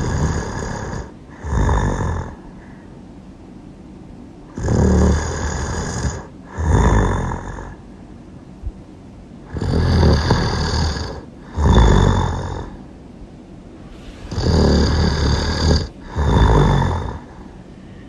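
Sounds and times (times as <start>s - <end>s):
loud snoring: 0.0s - 2.4s, 4.5s - 7.8s, 9.5s - 12.8s, 13.8s - 17.6s.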